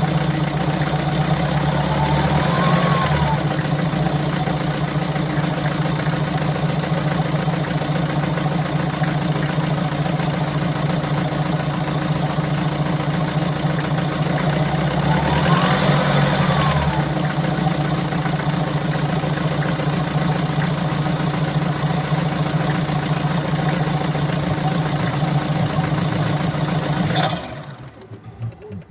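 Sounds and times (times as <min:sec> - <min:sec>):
engine revving: 0:00.0 - 0:05.2, 0:13.9 - 0:21.3, 0:21.9 - 0:28.9
diesel engine running: 0:00.0 - 0:28.9.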